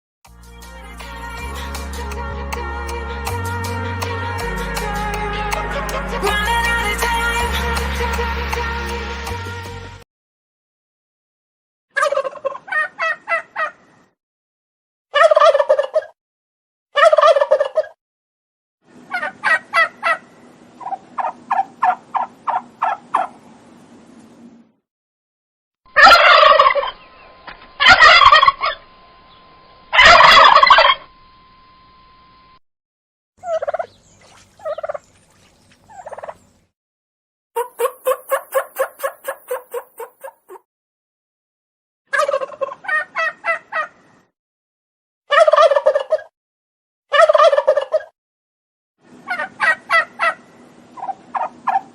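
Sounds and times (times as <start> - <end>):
turkey rattling gobble: 12.0 - 13.8, 15.2 - 16.1, 17.0 - 18.0, 19.1 - 23.4, 26.0 - 27.1, 27.8 - 28.8, 30.0 - 31.0, 33.4 - 35.1, 35.8 - 36.4, 37.6 - 40.6, 42.1 - 44.0, 45.3 - 46.3, 47.1 - 48.1, 49.3 - 50.4, 51.0 - 51.9
turkey yelping: 12.0 - 13.8, 15.2 - 16.1, 17.0 - 18.0, 19.1 - 23.4, 25.9 - 27.2, 27.8 - 28.8, 29.9 - 31.1, 33.4 - 35.0, 35.9 - 36.4, 37.6 - 40.6, 42.1 - 44.0, 45.3 - 46.3, 47.1 - 48.1, 49.3 - 51.9.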